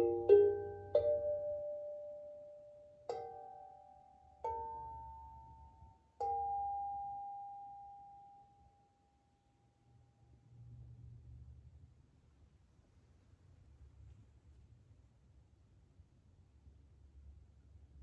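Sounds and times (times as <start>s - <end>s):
steel tongue drum notes: 0.0s - 3.8s, 4.4s - 7.2s.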